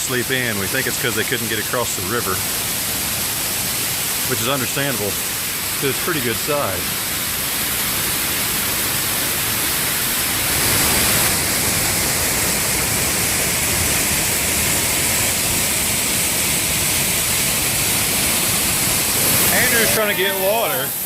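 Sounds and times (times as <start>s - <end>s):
fast-flowing river rushing: 0.0s - 21.0s.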